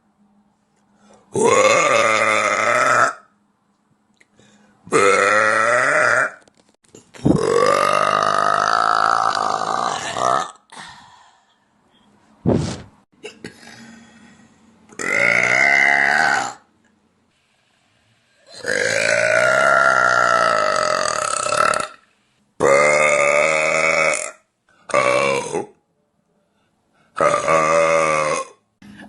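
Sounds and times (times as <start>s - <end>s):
woman belching: 1.4s - 3.2s, 4.9s - 6.4s, 7.2s - 10.6s, 14.9s - 16.6s, 18.5s - 22.0s, 22.6s - 25.8s, 27.2s - 28.6s.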